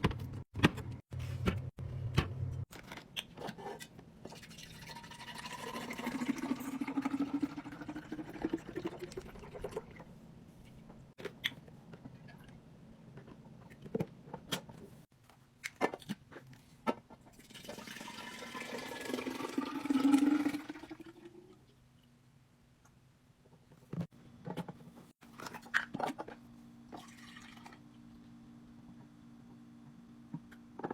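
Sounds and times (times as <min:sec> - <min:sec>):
liquid pouring into container: 0:04.3 - 0:10.0, 0:17.4 - 0:21.4, 0:26.9 - 0:27.8.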